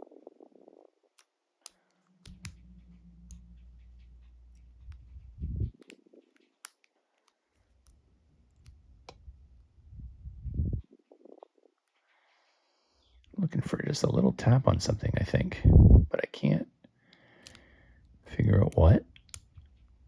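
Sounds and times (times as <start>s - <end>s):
low handling rumble: 2.2s - 5.8s.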